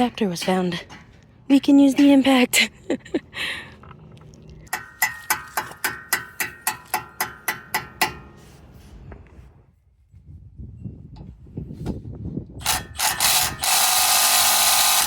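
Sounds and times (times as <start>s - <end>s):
ratchet clicking: 12.6s - 15.0s.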